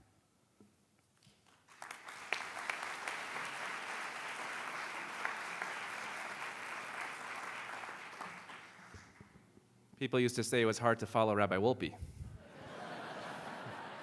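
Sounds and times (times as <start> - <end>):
congregation applauding: 1.6 - 9.4.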